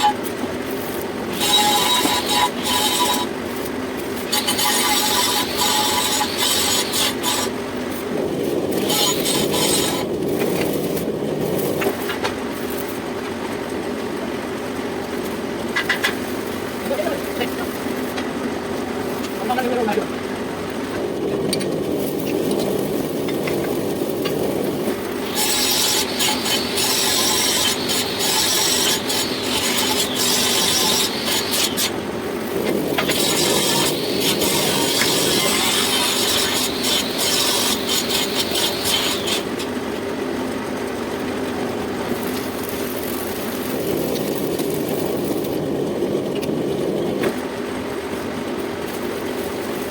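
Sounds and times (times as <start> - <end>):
cutting tool rasping on pipe: 0.9 - 3.4, 4.2 - 7.5, 8.8 - 10.1, 25.2 - 32.0, 32.9 - 39.6
metal lathe humming: 1.2 - 3.4, 4.3 - 7.5, 25.2 - 32.0, 32.6 - 39.6.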